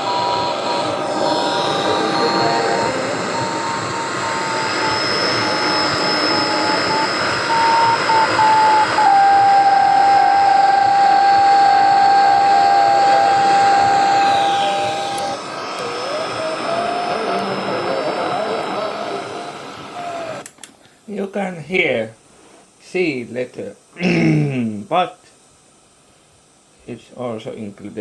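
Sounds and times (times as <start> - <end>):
morse code beeps: 0.0 - 15.4
radio static and hiss: 0.0 - 20.4
steady tone: 0.0 - 20.4.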